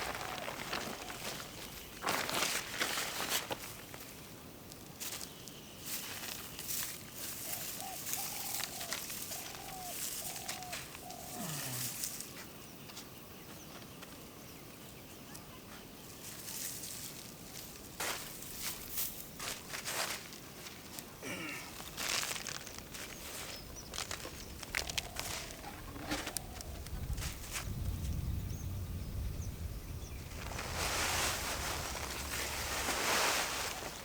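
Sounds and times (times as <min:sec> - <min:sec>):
dry straw rustling and crackling: 0:00.0 - 0:04.2, 0:04.8 - 0:12.4, 0:16.2 - 0:27.7, 0:30.2 - 0:34.0.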